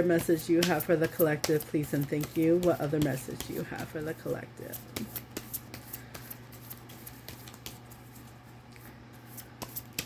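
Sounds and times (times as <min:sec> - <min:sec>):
low steady hum: 0:00.0 - 0:10.0
cards shuffling: 0:04.7 - 0:10.0.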